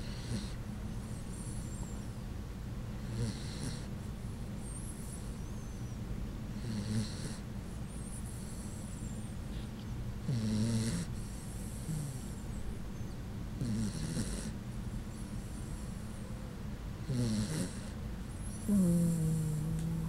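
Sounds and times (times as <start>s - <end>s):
dog snoring: 0.0s - 2.0s, 3.0s - 3.9s, 6.6s - 9.1s, 10.2s - 12.4s, 13.6s - 14.6s, 17.0s - 20.0s.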